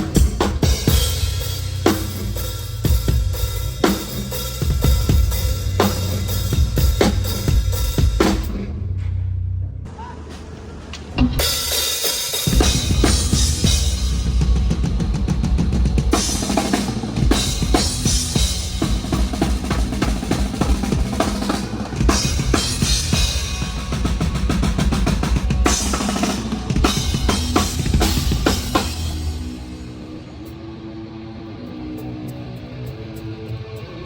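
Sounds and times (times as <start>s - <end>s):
cymbals: 0.0s - 8.7s, 11.3s - 30.6s
bass drum strokes: 12.5s - 30.1s.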